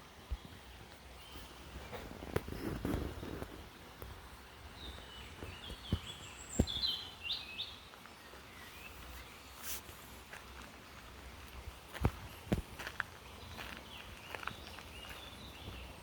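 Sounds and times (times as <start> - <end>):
songbird chirping and trilling: 4.7 - 9.8, 10.6 - 16.0
faint outdoor rumble: 7.8 - 16.0.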